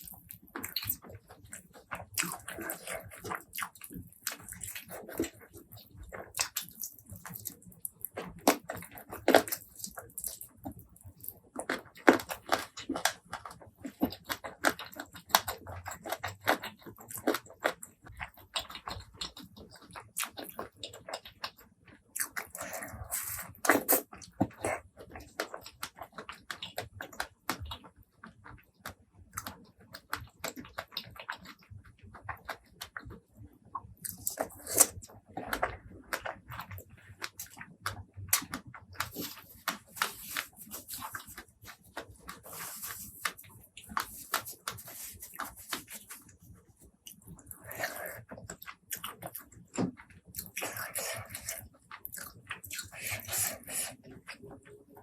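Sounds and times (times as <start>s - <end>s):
person chewing food: 0.0s - 55.0s.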